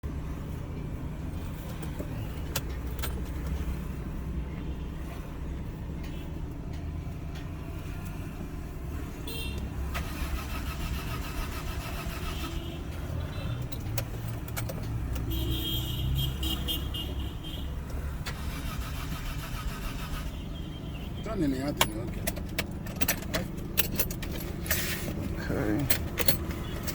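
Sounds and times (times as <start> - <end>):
car engine running: 9.8 - 26.9.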